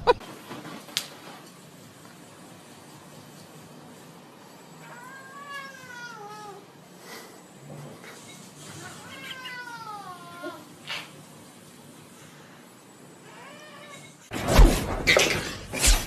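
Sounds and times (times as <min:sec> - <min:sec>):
cat meowing: 0:04.8 - 0:06.6, 0:08.8 - 0:10.7, 0:13.3 - 0:14.2.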